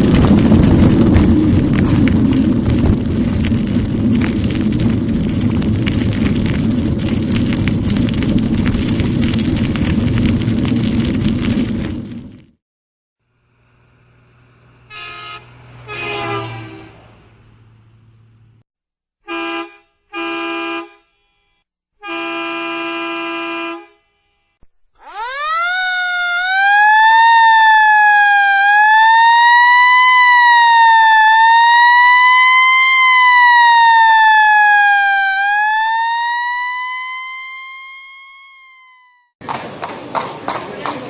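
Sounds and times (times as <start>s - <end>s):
many-toned horn blasts: 14.8s - 17.4s, 19.2s - 24.6s
emergency siren wailing: 25.0s - 39.3s.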